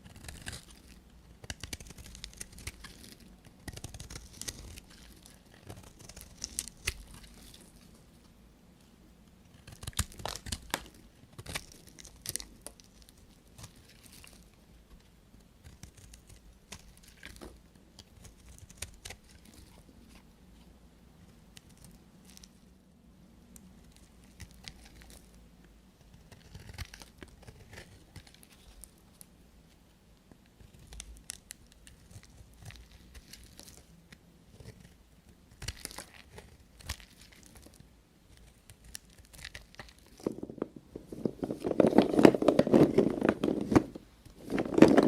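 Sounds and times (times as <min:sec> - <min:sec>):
knife crunching through soap: 0:00.0 - 0:07.8, 0:09.5 - 0:14.4, 0:26.2 - 0:28.8, 0:30.7 - 0:33.9, 0:35.5 - 0:37.8.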